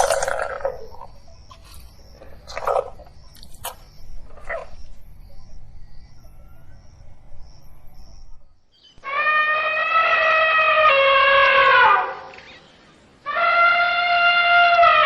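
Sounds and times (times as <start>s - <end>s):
faint high chirping: 0.5s - 9.0s
elephant calling: 9.0s - 15.0s.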